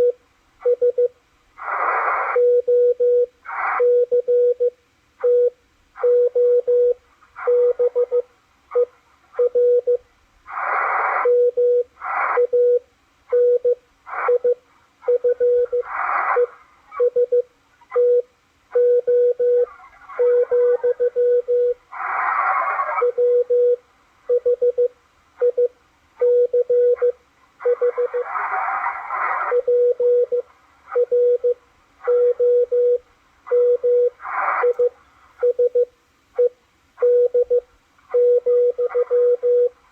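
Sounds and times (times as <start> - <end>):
morse code beeps: 0.0 - 1.1, 2.3 - 10.0, 11.3 - 18.2, 18.8 - 21.8, 23.0 - 28.3, 29.4 - 39.8
radio hiss bursts: 1.5 - 2.6, 3.4 - 4.0, 10.4 - 12.6, 14.0 - 17.1, 19.6 - 23.5, 27.6 - 31.1, 33.4 - 35.5.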